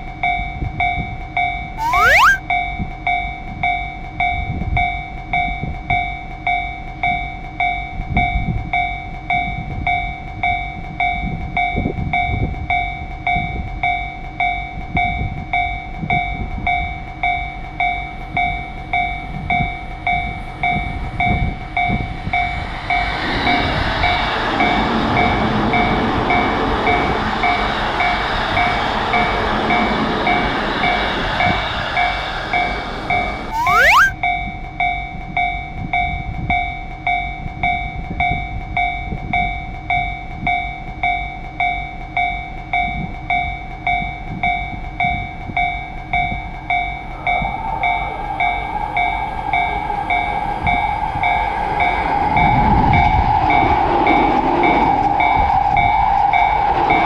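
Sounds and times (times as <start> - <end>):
passing train running noise: 17.8 - 33.5, 45.7 - 57.0.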